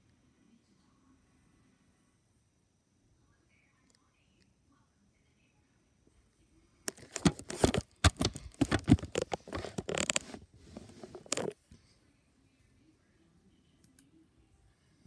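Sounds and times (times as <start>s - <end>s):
mechanical keyboard typing: 6.9s - 11.5s.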